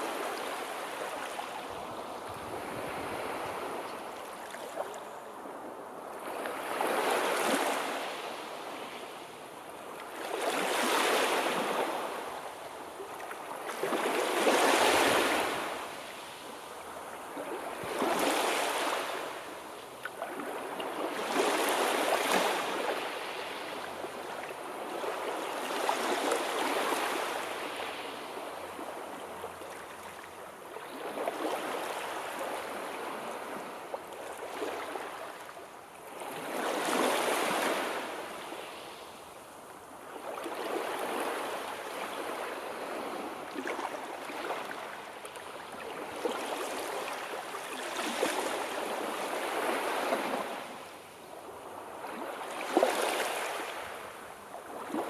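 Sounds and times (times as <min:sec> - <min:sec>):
sea waves washing ashore: 0:00.0 - 0:09.0.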